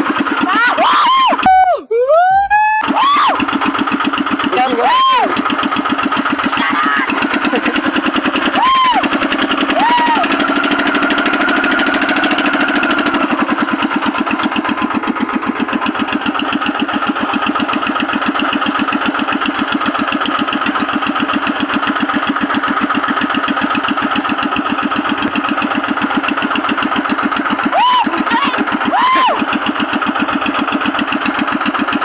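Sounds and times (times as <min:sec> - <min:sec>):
boat engine running: 0:00.0 - 0:01.6, 0:02.6 - 0:32.0.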